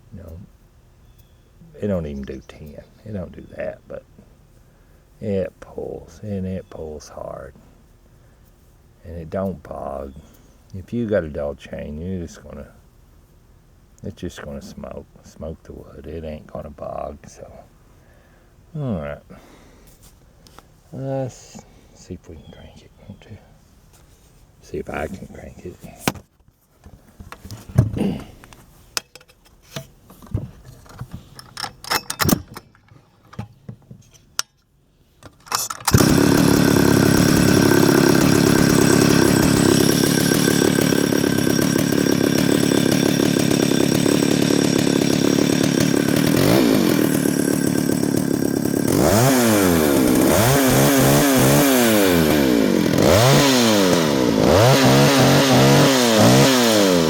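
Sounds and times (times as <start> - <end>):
chainsaw clacks and knocks: 35.5 - 57.0
chainsaw engine idling and revving: 35.9 - 57.0.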